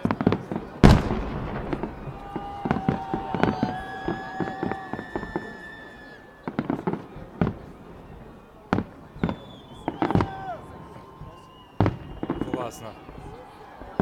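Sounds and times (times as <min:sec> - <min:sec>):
loud firework bangs: 0:00.0 - 0:13.2
fireworks whistling: 0:00.0 - 0:13.4
fireworks crackling: 0:00.0 - 0:14.0.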